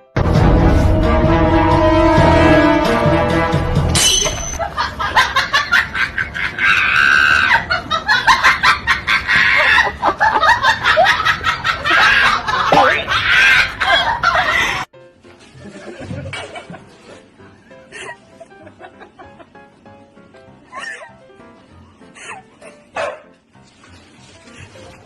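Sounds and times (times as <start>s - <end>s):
people laughing and shrieking: 4.6s - 14.9s.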